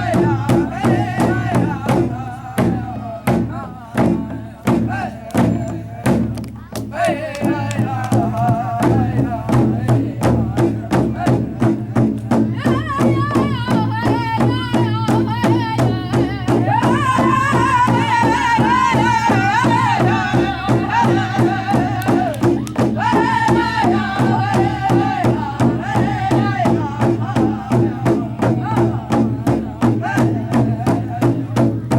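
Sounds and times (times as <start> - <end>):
drum beaten in steady rhythm: 0.0 - 31.9
high voice singing: 12.5 - 31.4.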